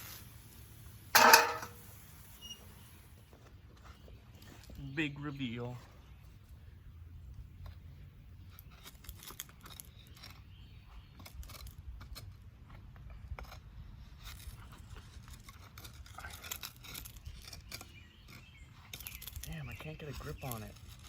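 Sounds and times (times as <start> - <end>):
metal piece scraping and crunching: 1.2 - 1.8.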